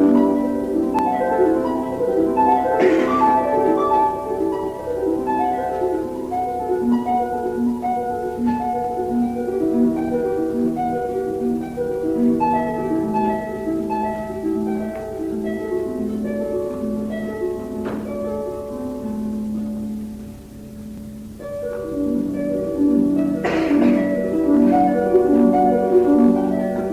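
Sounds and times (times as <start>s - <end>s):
instrumental melody: 0.0s - 26.9s.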